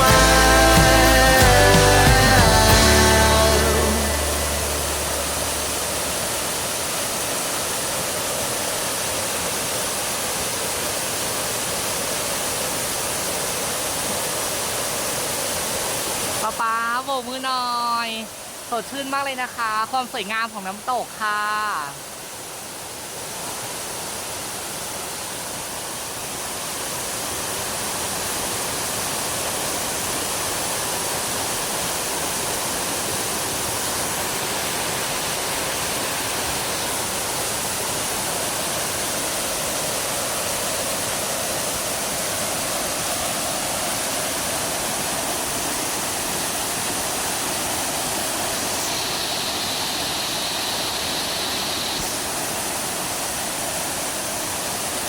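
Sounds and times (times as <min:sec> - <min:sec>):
waterfall rushing: 0:00.0 - 0:55.0.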